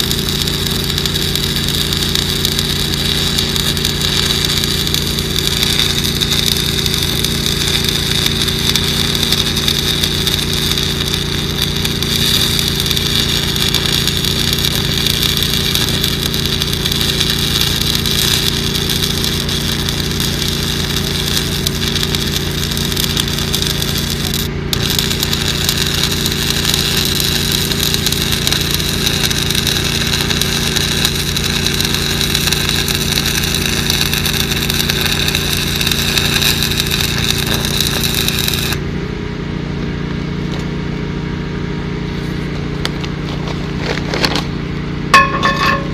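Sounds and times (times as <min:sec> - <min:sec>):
welding arc crackling and hissing: 0:00.0 - 0:38.8
engine drone: 0:00.0 - 0:45.9.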